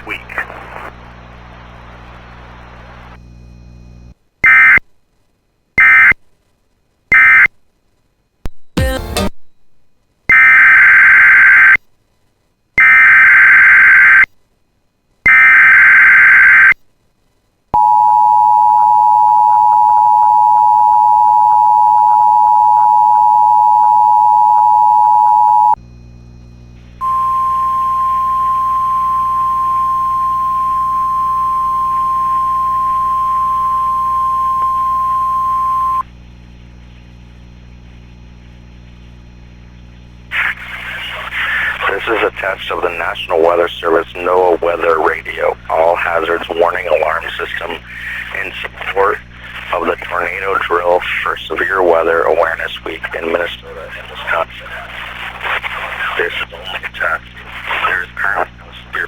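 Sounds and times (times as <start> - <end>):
steady warning alarm tone: 17.8 - 25.8, 27.0 - 36.0
two-tone attention signal: 27.0 - 36.0.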